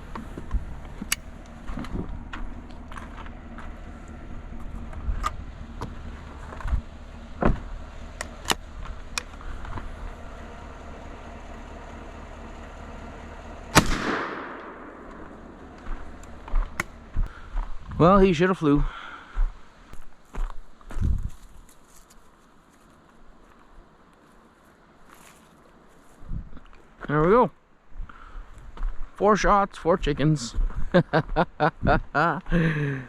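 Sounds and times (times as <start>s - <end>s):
shotgun shot ringing: 13.7s - 15.7s.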